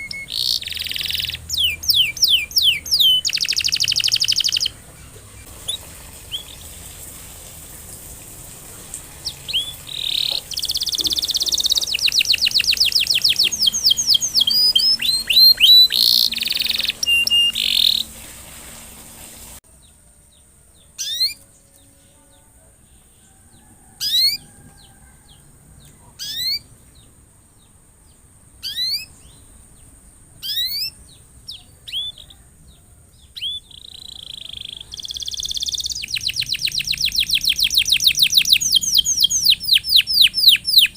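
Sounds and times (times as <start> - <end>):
canary trilling: 0.0 - 6.9, 9.1 - 18.2, 20.8 - 22.1, 23.1 - 26.8, 28.6 - 29.4, 30.4 - 40.9
canary chirps sweeping downward: 0.0 - 7.1, 9.0 - 18.3, 19.6 - 40.9.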